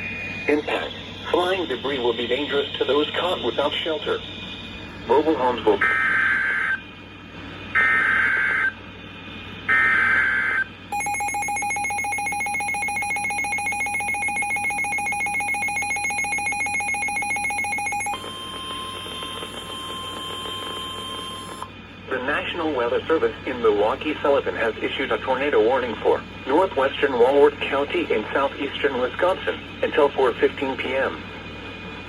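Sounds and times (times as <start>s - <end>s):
steady single-pitch alarm tone: 0.0s - 21.9s
rapid electronic alert beeps: 9.7s - 21.6s
screeching data bursts: 9.9s - 21.6s.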